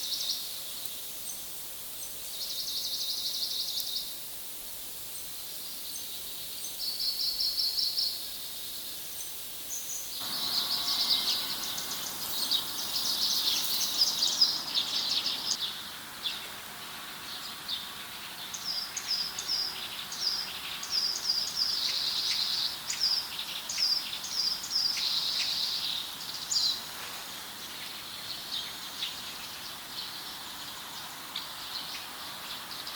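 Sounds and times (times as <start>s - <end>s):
steady outdoor hiss: 0.0s - 32.9s
birds singing: 9.2s - 26.9s.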